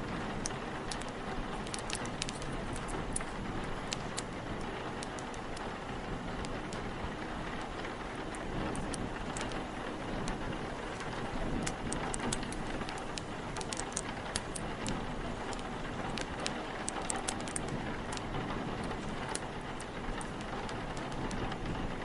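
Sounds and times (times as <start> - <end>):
steady rain hiss: 0.0 - 22.0
wood fire crackling: 0.0 - 22.0.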